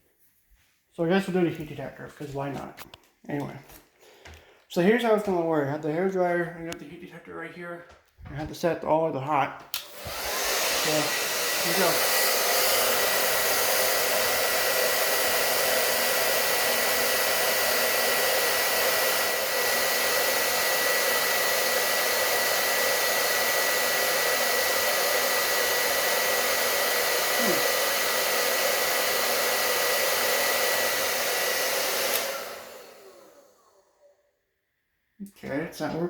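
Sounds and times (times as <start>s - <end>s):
hair dryer blowing: 9.6s - 34.1s.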